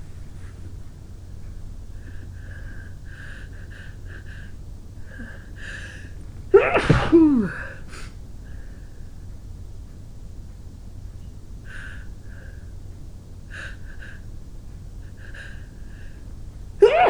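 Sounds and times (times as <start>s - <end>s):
woman sneezing: 6.5s - 7.8s
short quiet pre-sneeze sounds: 6.6s - 7.5s.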